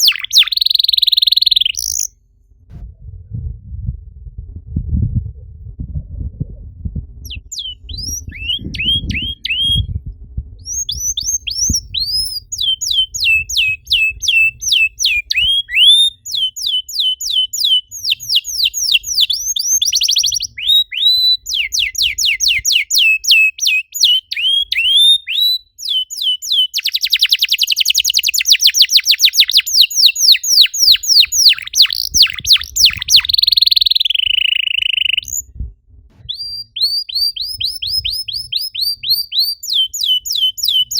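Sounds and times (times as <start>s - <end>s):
canary singing: 0.0s - 2.1s, 7.3s - 9.9s, 10.6s - 35.4s, 36.3s - 40.9s
faint low rumble: 2.1s - 15.8s, 35.2s - 39.4s.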